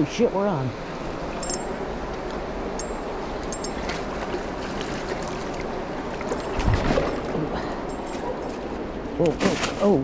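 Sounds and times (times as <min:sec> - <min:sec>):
creek water over rocks: 0:03.2 - 0:10.0.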